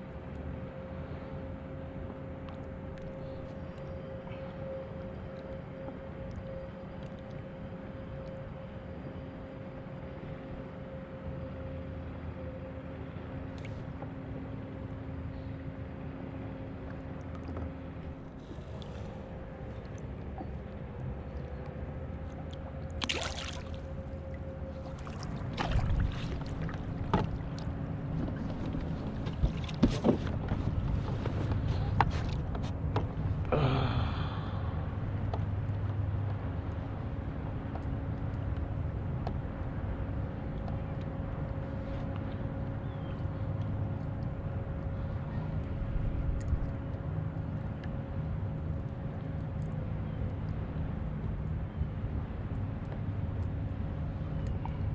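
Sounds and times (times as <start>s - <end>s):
engine droning: 0.0s - 54.9s
steady low rumble: 0.0s - 54.9s
water moving against kayak hull: 16.8s - 33.5s.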